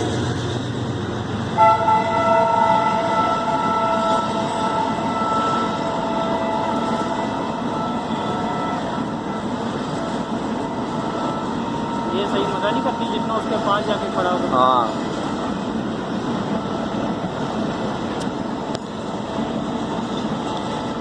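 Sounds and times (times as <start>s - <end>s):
train wheels rumbling: 0.0s - 21.0s
train horn blast: 1.6s - 9.6s, 10.3s - 14.7s.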